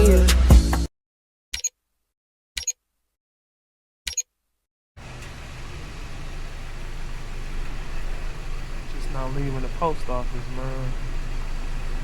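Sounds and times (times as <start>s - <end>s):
short double clicks: 1.6s - 1.8s, 2.6s - 2.8s, 4.1s - 4.3s
low engine hum: 5.0s - 12.0s
outdoor noise: 5.0s - 12.0s.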